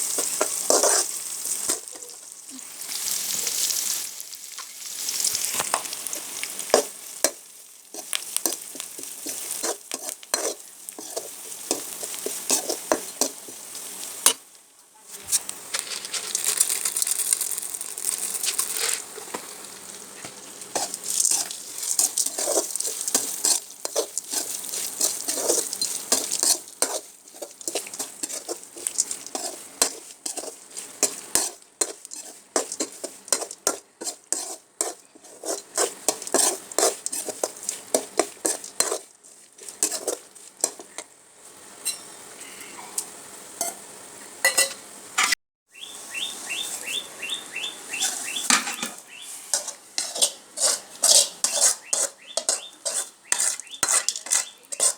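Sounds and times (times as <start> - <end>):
metal ladle scraping a pan: 0.0 - 2.2, 5.7 - 14.4, 20.7 - 41.1, 41.8 - 42.8, 44.4 - 45.4, 47.9 - 54.9
batter sizzling in hot oil: 0.0 - 54.9.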